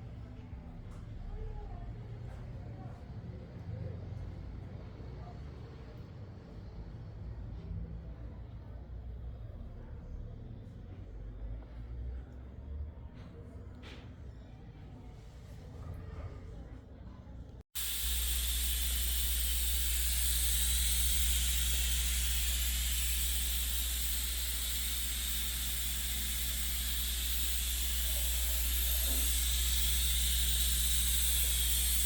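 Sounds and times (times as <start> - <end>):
steady loud hiss: 17.8 - 32.0.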